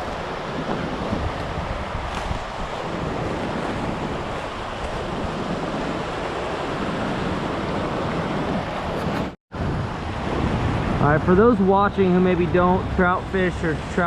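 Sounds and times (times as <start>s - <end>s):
mountain creek rushing: 9.8s - 14.0s.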